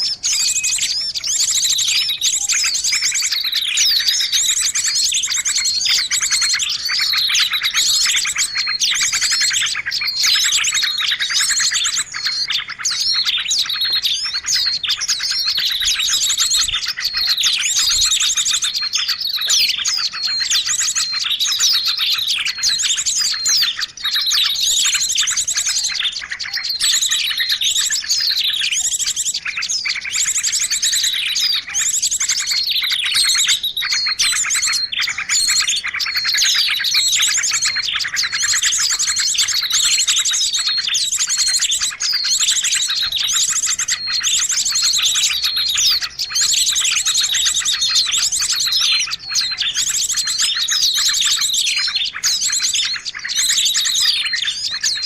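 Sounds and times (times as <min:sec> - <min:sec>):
songbird chirping and trilling: 0:00.0 - 0:55.0.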